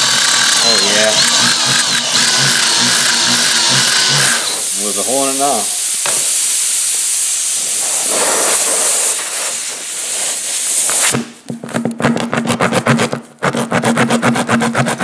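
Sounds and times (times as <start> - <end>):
air hissing from tire: 4.4 - 11.3.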